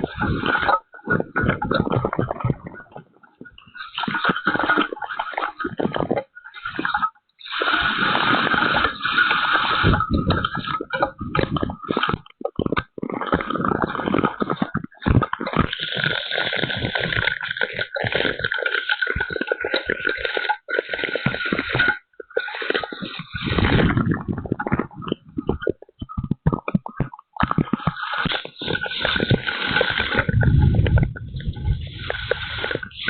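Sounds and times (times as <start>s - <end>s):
low rumble: 30.3s - 32.6s.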